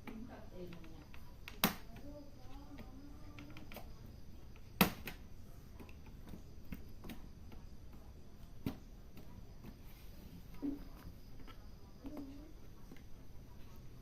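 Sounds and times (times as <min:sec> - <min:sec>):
small plastic clicks: 0:00.0 - 0:07.6.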